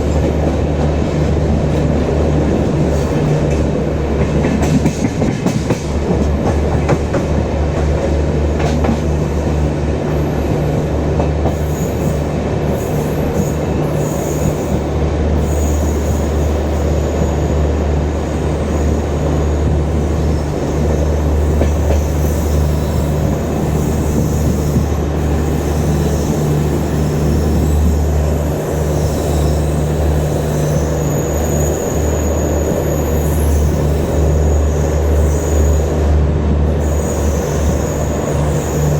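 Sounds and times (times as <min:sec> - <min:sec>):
wheels rumbling on track: 0:00.0 - 0:38.9.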